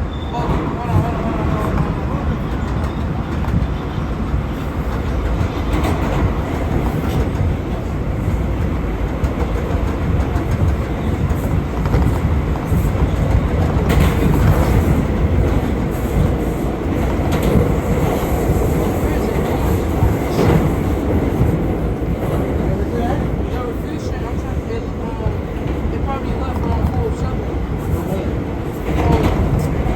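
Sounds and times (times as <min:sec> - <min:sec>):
subway train rumbling: 0:00.0 - 0:29.9.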